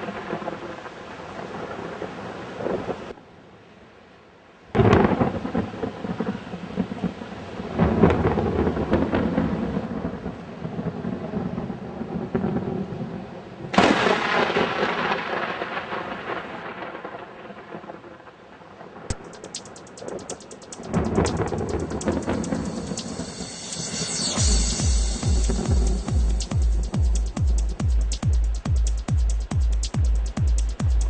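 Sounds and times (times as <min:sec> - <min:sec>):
rushing storm wash: 0:00.0 - 0:03.2, 0:04.8 - 0:31.0
heavy storm crashes: 0:13.7 - 0:18.0, 0:20.1 - 0:31.0.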